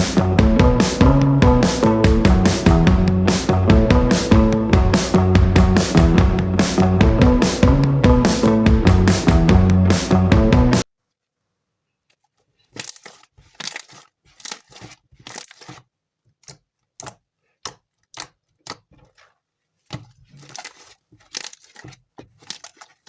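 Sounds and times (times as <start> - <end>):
slime squishing by hand: 12.1 - 23.0.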